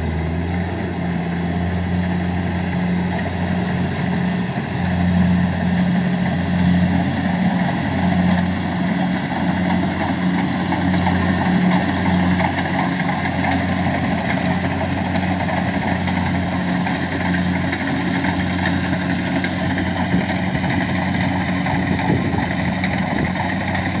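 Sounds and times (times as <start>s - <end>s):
harvester engine humming: 0.0s - 24.0s.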